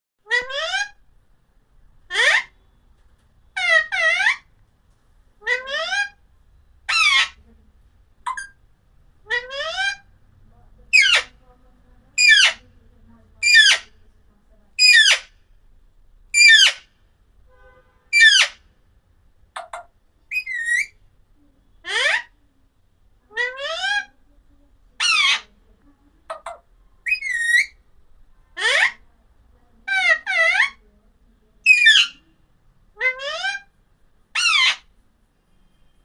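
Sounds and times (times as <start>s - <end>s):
parrot harsh calls: 0.3s - 1.0s, 2.1s - 2.6s, 3.6s - 4.5s, 5.4s - 6.2s, 6.9s - 7.4s, 8.2s - 8.6s, 10.9s - 11.3s, 12.2s - 12.6s, 13.4s - 13.9s, 14.8s - 15.3s, 16.4s - 16.9s, 18.1s - 18.6s, 19.5s - 21.0s, 21.8s - 22.3s, 25.0s - 25.5s, 26.3s - 27.8s, 28.6s - 29.0s, 29.8s - 30.8s, 31.7s - 32.2s, 33.0s - 33.7s, 34.3s - 34.9s.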